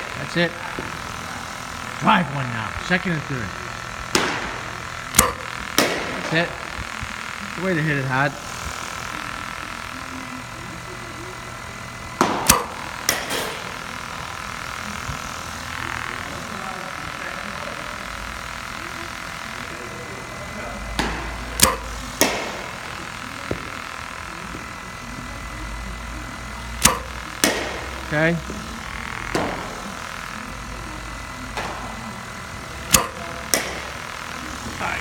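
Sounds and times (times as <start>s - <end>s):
steady low hum: 0.0s - 35.0s
bat cracking against balls: 3.7s - 7.2s, 12.1s - 15.7s, 20.9s - 24.8s, 26.8s - 30.6s, 31.5s - 34.8s.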